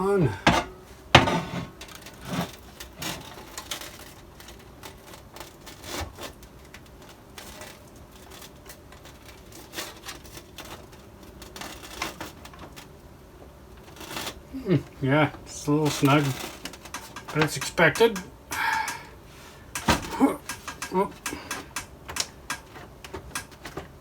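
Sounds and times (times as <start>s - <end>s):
computer case panel clicks and scrapes: 0.5s - 13.0s, 15.7s - 19.0s, 19.6s - 24.0s.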